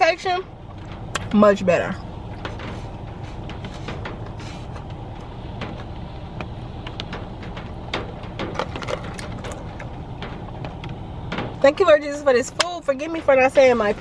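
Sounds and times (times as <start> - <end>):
steady low hum: 0.0 - 14.0
takeout containers clicking and rustling: 7.0 - 11.5.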